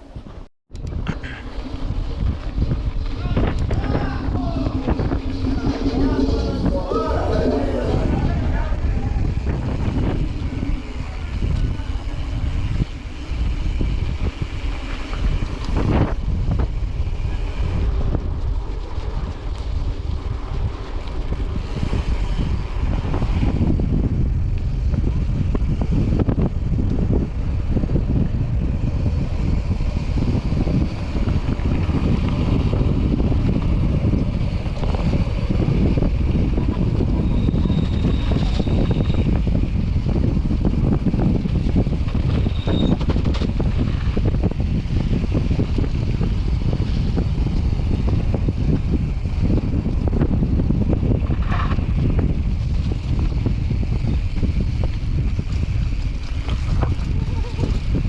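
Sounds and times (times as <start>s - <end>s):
mountain bike rumbling on dirt: 0.0s - 58.0s
wind buffeting microphone: 0.0s - 58.0s
high squeal: 3.0s - 11.8s, 36.7s - 39.5s, 42.3s - 43.2s.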